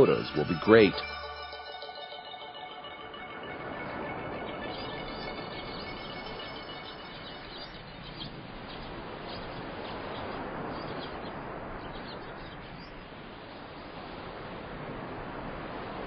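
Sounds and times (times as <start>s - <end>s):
small birds chirping: 3.8s - 13.2s.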